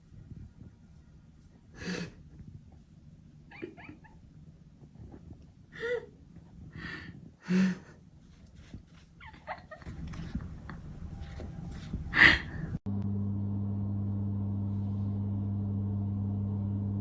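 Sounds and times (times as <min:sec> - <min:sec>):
dog making noisy sounds: 0:03.5 - 0:04.3, 0:09.2 - 0:10.4.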